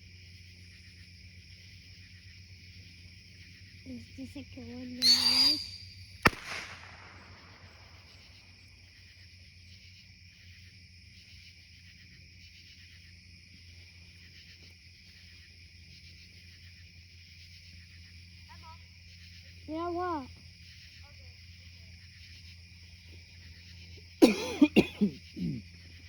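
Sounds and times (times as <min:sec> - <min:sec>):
insects trilling: 0:00.0 - 0:26.0
sharp crack with echo: 0:05.0 - 0:07.9.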